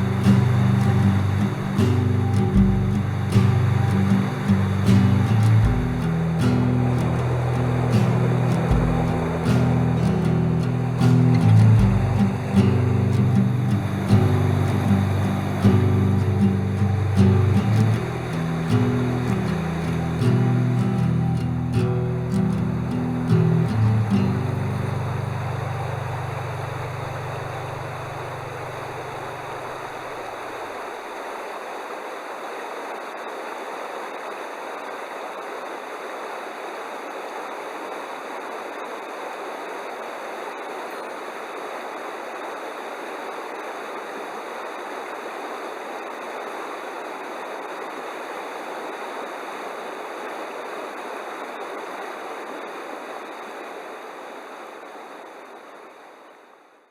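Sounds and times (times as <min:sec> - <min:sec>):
background music: 0:00.0 - 0:29.5
stream water rushing: 0:00.0 - 0:56.5.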